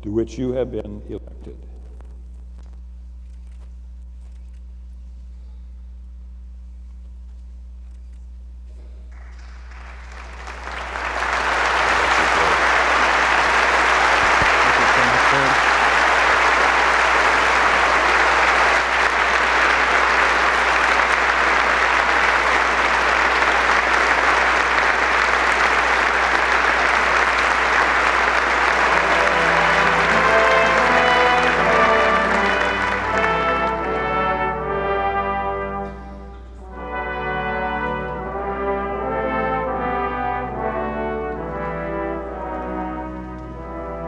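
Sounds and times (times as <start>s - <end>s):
crowd applauding: 9.1s - 43.6s.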